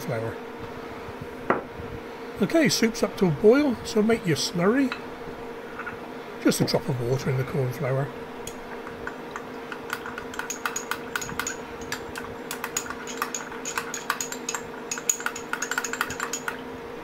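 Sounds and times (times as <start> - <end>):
steady low hum: 0.0 - 17.0
spoon clicking against bowl: 8.5 - 16.6.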